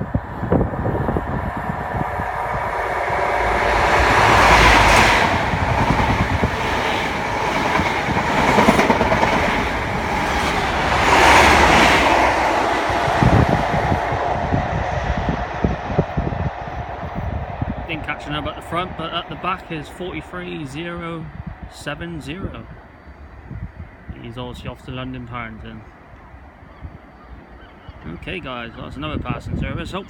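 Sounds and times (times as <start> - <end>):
wheels clacking over rail joints: 0.0 - 13.8
train passing at speed: 0.0 - 29.7.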